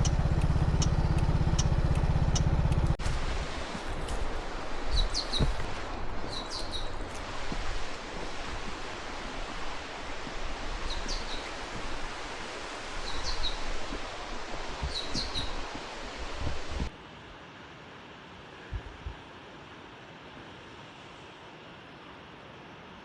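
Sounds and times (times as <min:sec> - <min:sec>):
steady rushing noise: 0:00.0 - 0:19.4
small bird chirping: 0:04.9 - 0:07.2.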